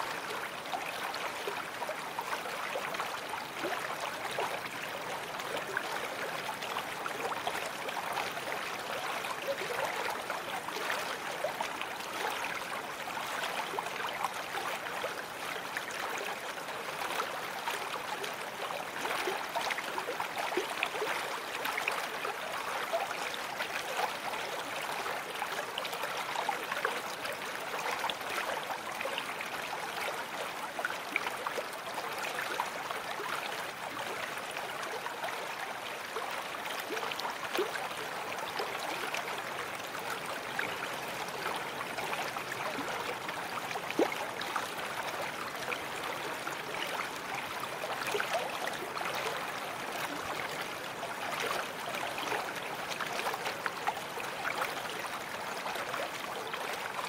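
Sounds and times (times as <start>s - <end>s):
babbling brook: 0.0s - 57.0s.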